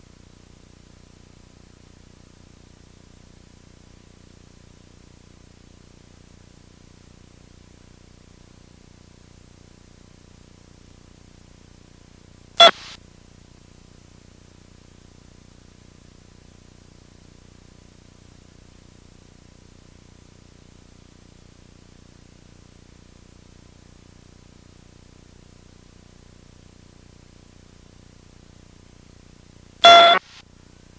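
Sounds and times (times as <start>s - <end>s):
faint electrical hiss and hum: 0.0s - 30.9s
sharp click: 12.6s - 13.0s.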